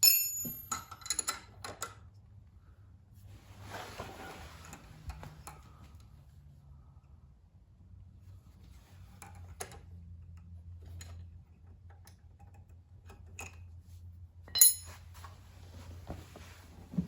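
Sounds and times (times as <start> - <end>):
sharp metallic clink: 0.0 - 0.9, 14.6 - 15.0.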